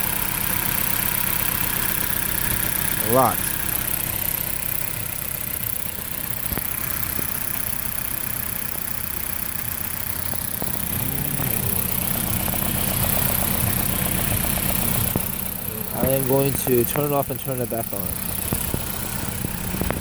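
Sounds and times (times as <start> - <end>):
car engine idling roughly: 0.0 - 20.0
higher hum: 10.3 - 20.0.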